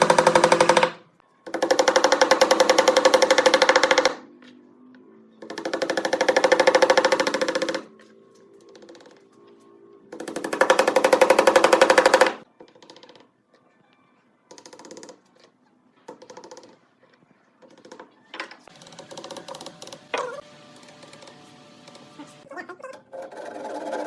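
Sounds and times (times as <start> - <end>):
sewing machine stitching: 23.1 - 24.0.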